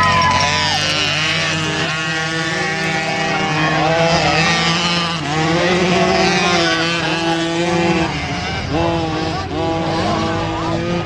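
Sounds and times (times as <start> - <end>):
small dirt bike engines revving: 0.0 - 11.0.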